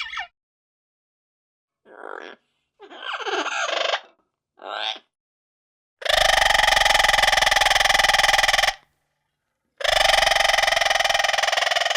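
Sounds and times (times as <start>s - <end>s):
parrot mimicking telephone ring: 6.0s - 8.8s.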